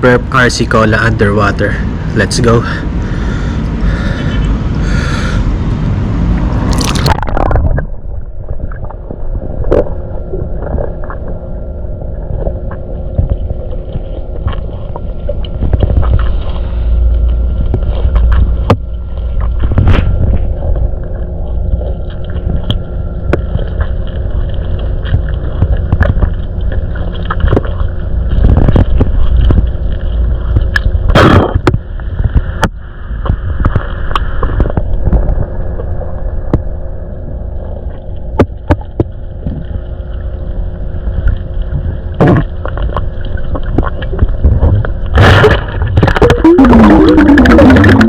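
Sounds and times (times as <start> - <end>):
low underwater rumble: 0.0 - 48.0
bursts of bubbles: 6.6 - 9.0, 45.1 - 48.0
clicks and gurgles: 6.6 - 11.4, 12.0 - 36.7, 37.8 - 40.2, 41.2 - 48.0.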